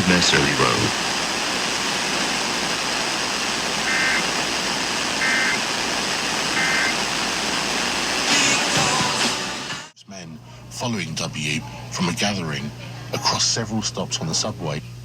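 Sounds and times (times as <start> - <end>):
radio static hiss: 0.0 - 10.0
two-tone data bursts: 3.8 - 4.4, 5.2 - 5.7, 6.5 - 7.1.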